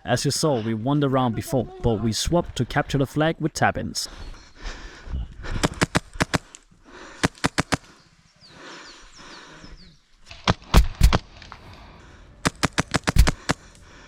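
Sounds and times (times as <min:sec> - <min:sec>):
airsoft guns firing sharp pops: 0:05.6 - 0:06.6, 0:07.2 - 0:07.9, 0:10.3 - 0:11.7, 0:12.4 - 0:13.8.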